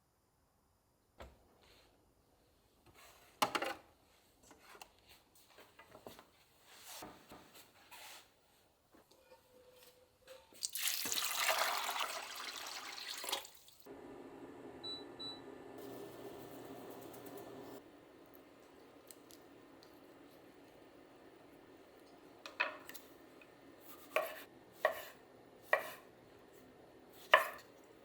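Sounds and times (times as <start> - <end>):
kitchen tap running into sink: 10.6 - 13.8
kitchenware clinking: 22.4 - 23.1.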